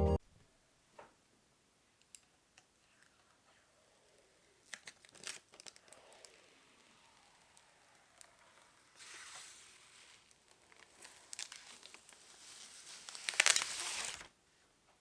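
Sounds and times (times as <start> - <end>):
plastic crinkling: 4.6 - 14.3.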